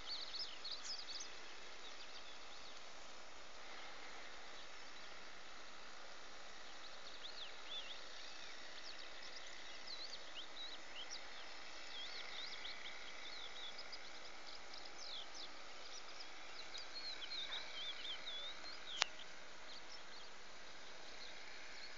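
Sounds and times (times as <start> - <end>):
small birds chirping: 0.0 - 21.9
steady outdoor hiss: 0.0 - 21.9.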